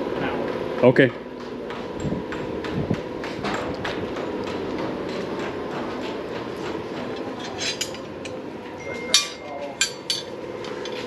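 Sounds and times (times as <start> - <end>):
steady hum: 0.0 - 11.0
metal parts clattering: 7.4 - 8.1
sharp metallic clinks: 7.4 - 11.0.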